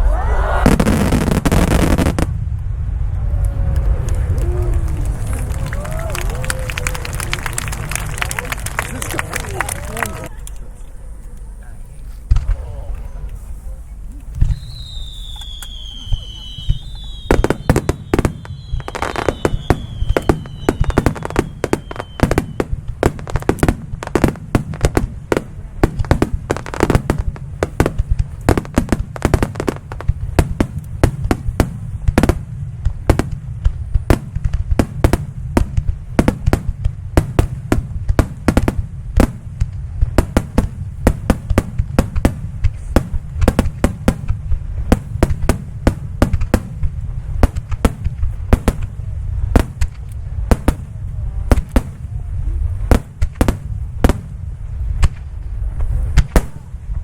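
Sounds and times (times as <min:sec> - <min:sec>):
low rumble: 0:00.0 - 0:57.0
fireworks bursts and cracks: 0:00.1 - 0:10.3, 0:14.3 - 0:57.0
fireworks falling whistles: 0:14.4 - 0:23.5.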